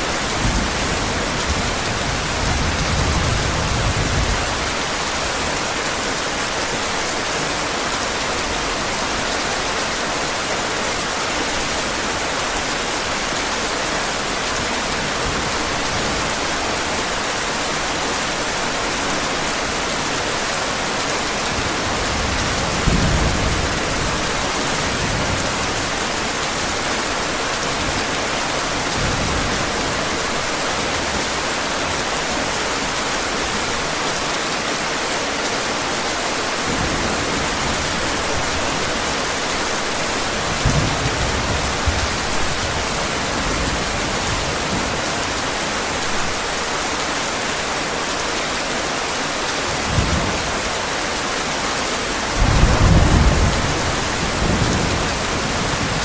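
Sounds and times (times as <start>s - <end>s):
heavy rain falling: 0.0s - 56.0s
rolling thunder: 52.4s - 56.0s.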